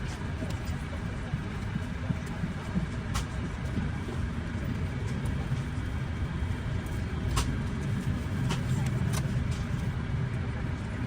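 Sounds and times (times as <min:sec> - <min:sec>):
aircraft cabin low rumble: 0:00.0 - 0:11.0.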